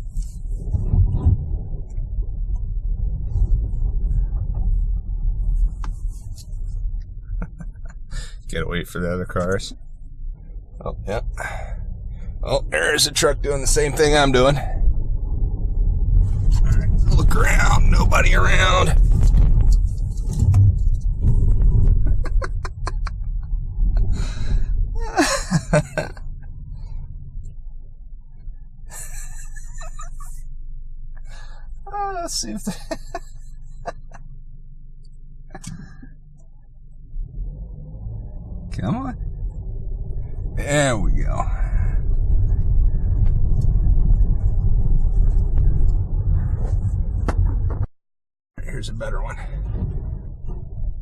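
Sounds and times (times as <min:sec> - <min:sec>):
car engine and tyres rumbling: 0:00.0 - 0:47.9, 0:48.5 - 0:51.0.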